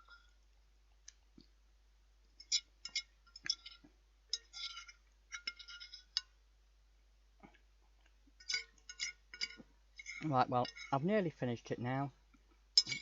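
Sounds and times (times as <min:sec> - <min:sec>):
cutlery clinking against a dish: 0:08.4 - 0:11.0, 0:12.8 - 0:13.0.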